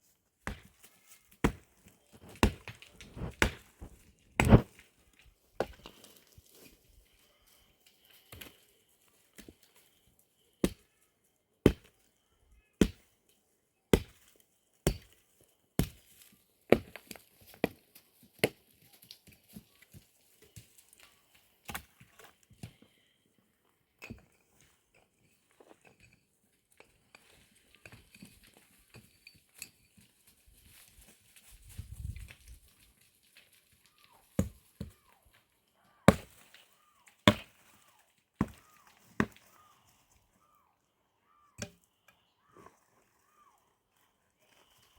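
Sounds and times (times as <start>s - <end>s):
firewood being chopped: 0.4s - 4.9s, 5.6s - 6.0s, 10.6s - 10.8s, 11.6s - 12.0s, 12.8s - 13.1s, 13.9s - 15.2s, 15.8s - 17.8s, 18.4s - 18.6s, 21.6s - 22.8s, 34.3s - 35.1s, 36.1s - 39.4s.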